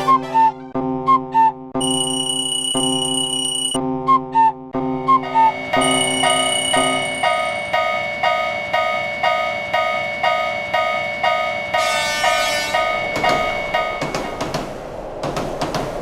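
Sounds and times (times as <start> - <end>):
level-crossing warning bell: 1.8 - 3.8, 5.2 - 14.8
steady high tone: 1.8 - 3.8, 5.1 - 14.4.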